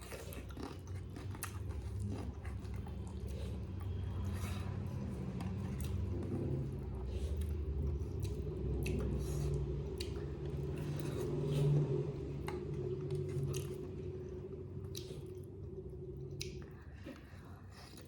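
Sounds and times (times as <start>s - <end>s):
chewing and wet mouth sounds: 0.0s - 18.0s.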